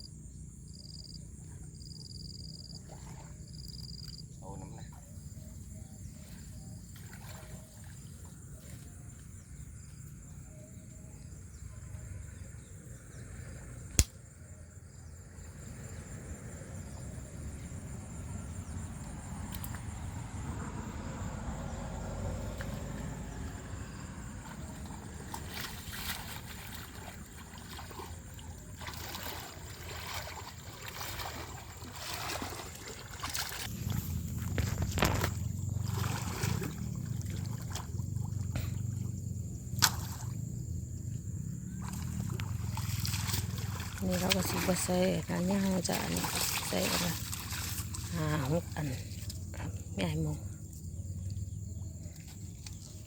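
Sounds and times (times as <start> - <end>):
water sloshing and splashing: 1.3 - 14.1, 15.1 - 53.0
sharp click: 13.9 - 14.2.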